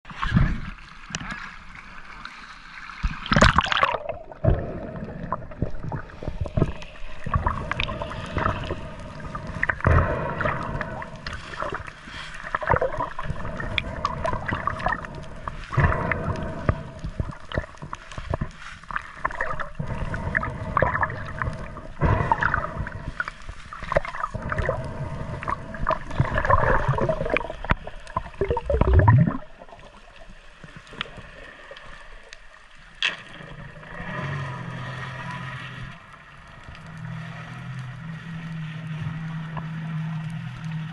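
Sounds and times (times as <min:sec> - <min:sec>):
underwater gurgling and sloshing: 0:00.0 - 0:40.9.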